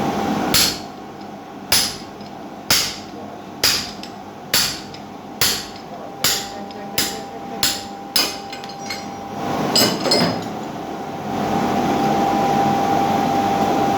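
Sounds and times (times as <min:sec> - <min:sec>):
hammer striking steel on anvil: 0:00.5 - 0:01.0, 0:01.7 - 0:09.2
metal clatter: 0:01.8 - 0:10.6.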